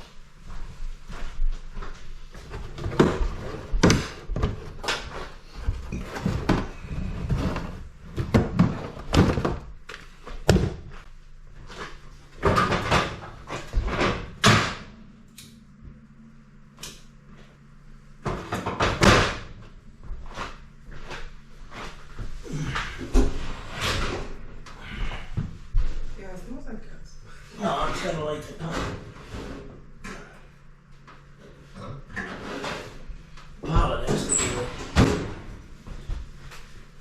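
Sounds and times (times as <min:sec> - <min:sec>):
hard objects clunking and knocking: 0:02.4 - 0:11.0.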